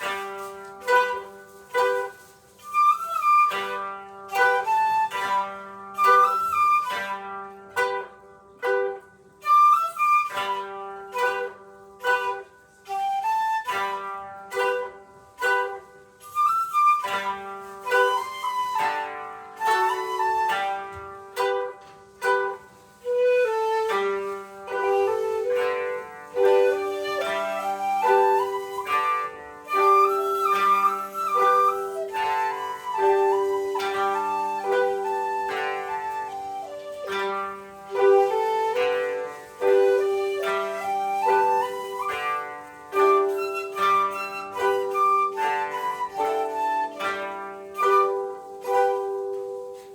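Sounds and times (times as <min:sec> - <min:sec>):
koto strings plucked: 0:00.0 - 0:13.0, 0:13.6 - 0:49.9
bamboo flute held notes: 0:00.0 - 0:49.9.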